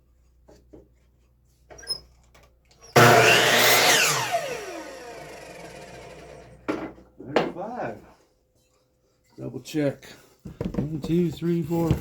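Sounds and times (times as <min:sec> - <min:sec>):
power saw cutting wood: 0:02.9 - 0:06.6
wood knocking: 0:10.4 - 0:12.0.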